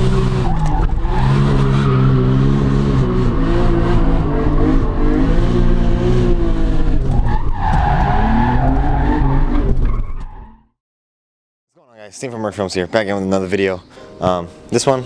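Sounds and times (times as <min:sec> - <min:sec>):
car engine revving: 0:00.0 - 0:09.8.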